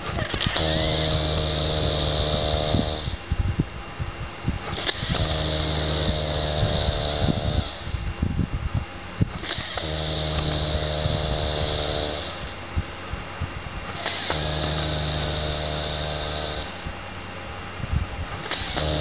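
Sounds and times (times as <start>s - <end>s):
man snoring heavily: 9.5s - 12.6s, 18.6s - 19.0s.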